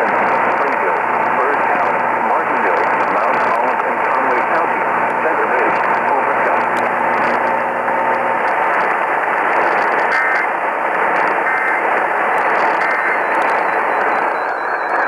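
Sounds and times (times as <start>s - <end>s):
radio static hiss: 0.0s - 15.0s
two-tone data bursts: 9.8s - 15.0s.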